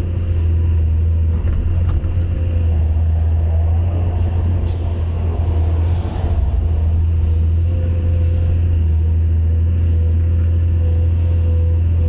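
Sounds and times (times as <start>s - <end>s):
excavator diesel engine running: 0.0s - 12.0s.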